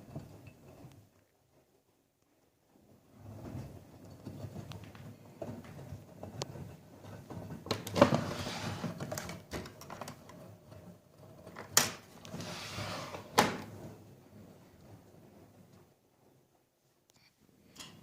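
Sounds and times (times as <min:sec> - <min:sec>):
washing machine swishing: 0:12.1 - 0:14.0.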